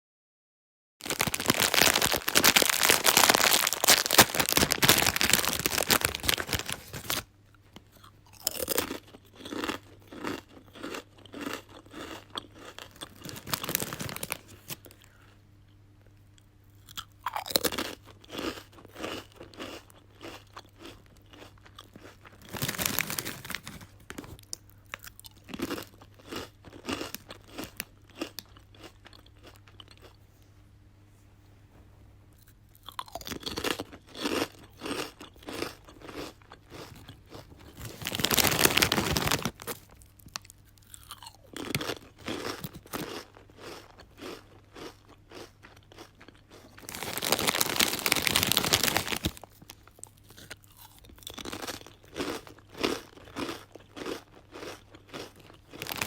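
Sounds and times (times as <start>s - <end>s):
chips crunching: 1.0s - 15.2s, 16.8s - 30.2s, 32.4s - 56.0s
rhythmic chewing: 1.0s - 15.3s, 32.4s - 56.0s
faint low hum: 1.1s - 55.9s.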